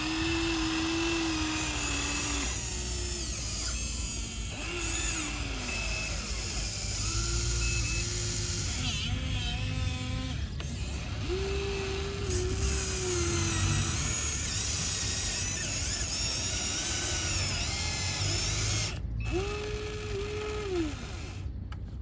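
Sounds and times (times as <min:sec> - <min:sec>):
electric motors whining: 0:00.0 - 0:22.0.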